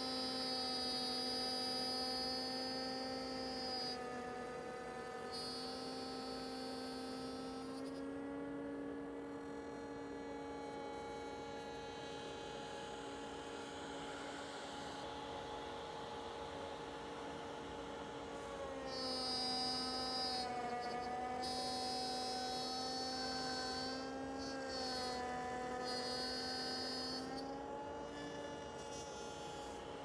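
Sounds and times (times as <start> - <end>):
router whine and hum: 0.0 - 30.0.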